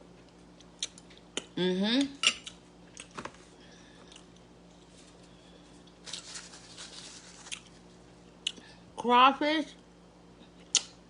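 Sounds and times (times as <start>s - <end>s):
faint steady hum: 0.0s - 11.0s
person chewing: 0.3s - 1.6s, 4.0s - 4.9s, 7.2s - 8.7s.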